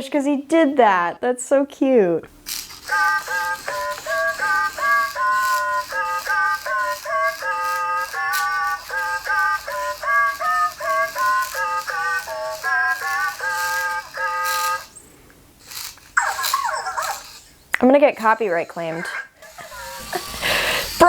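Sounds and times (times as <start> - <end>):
robot singing electronic voice: 2.9 - 14.9.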